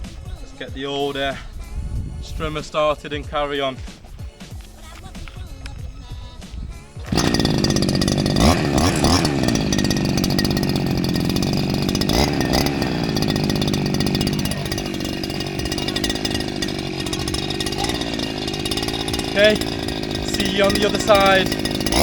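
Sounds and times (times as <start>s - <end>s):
strimmer engine revving: 6.9s - 22.0s.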